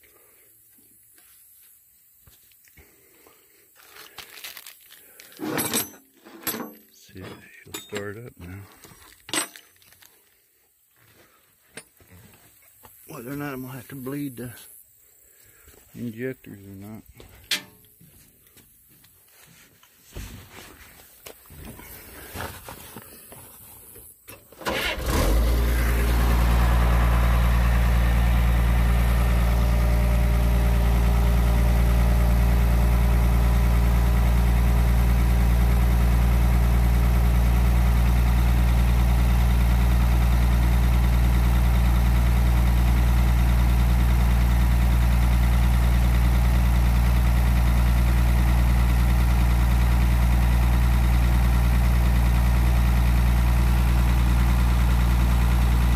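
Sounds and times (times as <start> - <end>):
diesel engine starting and idling: 24.1 - 55.9.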